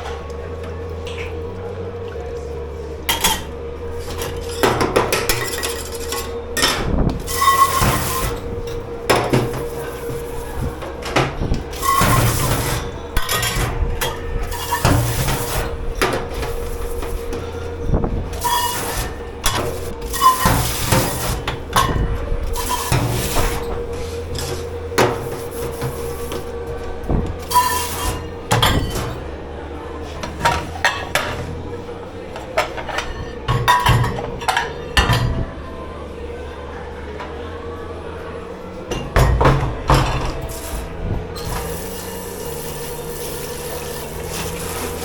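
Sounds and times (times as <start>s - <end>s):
steady machine hum: 0.0s - 45.0s
dishes and cutlery clattering: 3.1s - 29.4s, 30.0s - 31.6s, 32.3s - 35.4s.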